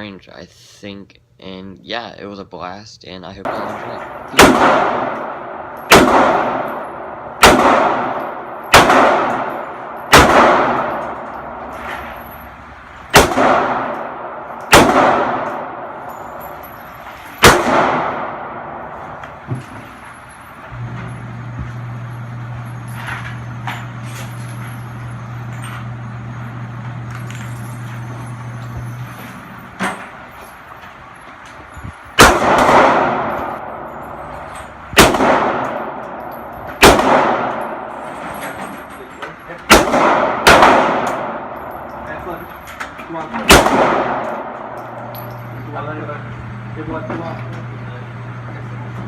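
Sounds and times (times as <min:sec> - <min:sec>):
steady low hum: 0:00.0 - 0:49.0
gunshots with ringing echo: 0:03.4 - 0:19.2, 0:32.1 - 0:38.2, 0:39.7 - 0:42.6, 0:43.4 - 0:45.6.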